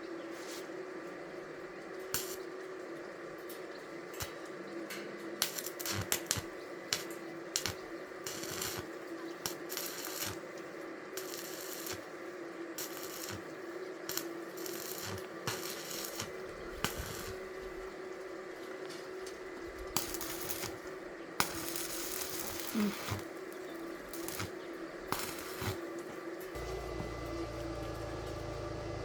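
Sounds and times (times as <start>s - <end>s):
short hissing bursts: 21.4s - 23.3s, 25.1s - 25.8s
steady hum: 26.4s - 29.0s.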